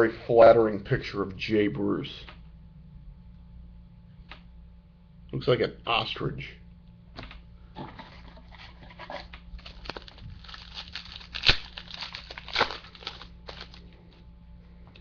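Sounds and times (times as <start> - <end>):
cards being shuffled: 8.0 - 14.2
wrapper crinkling: 8.5 - 14.0.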